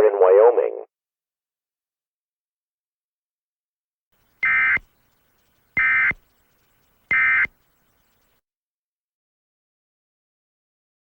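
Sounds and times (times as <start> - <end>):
shrill digital data bursts: 4.4 - 6.3, 7.1 - 7.5.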